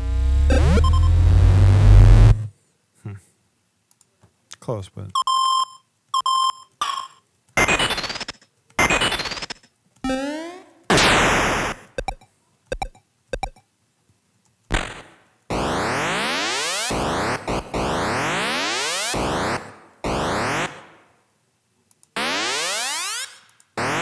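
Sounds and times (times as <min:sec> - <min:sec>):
fast rising pitch sweeps: 0:00.0 - 0:02.5
noisy burst with falling tone: 0:00.0 - 0:02.5
short synth blips: 0:00.0 - 0:02.5, 0:10.1 - 0:13.6.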